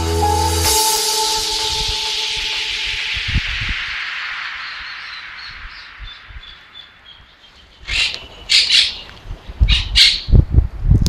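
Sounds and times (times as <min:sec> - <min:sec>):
hiss: 0:00.6 - 0:07.1
high bird chirps: 0:02.3 - 0:09.2
harsh bird calls: 0:04.6 - 0:10.3.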